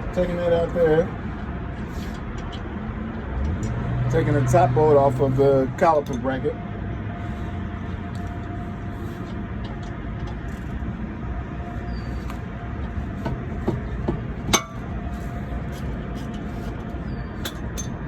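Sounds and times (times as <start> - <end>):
loud sharp metal clank: 14.5 - 14.9
metal tools clinking: 17.4 - 18.0.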